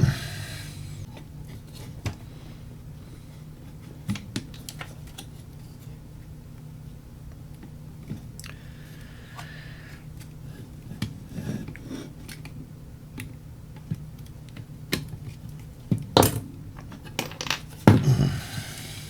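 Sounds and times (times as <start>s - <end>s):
low steady hum: 0.0s - 3.7s
knocks on workbench: 16.2s - 16.5s
tools clicking and tapping: 16.2s - 18.1s.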